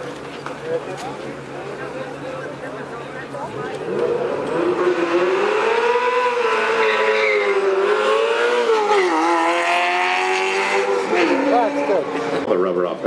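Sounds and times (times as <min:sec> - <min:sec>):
car engine revving high: 0:03.8 - 0:12.4
tyres squealing: 0:06.7 - 0:07.7.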